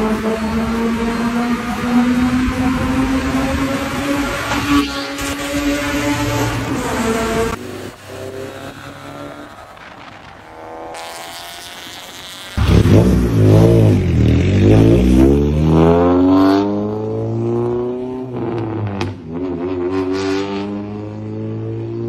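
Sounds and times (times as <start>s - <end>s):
car engine accelerating: 0.0s - 11.6s, 12.4s - 22.0s.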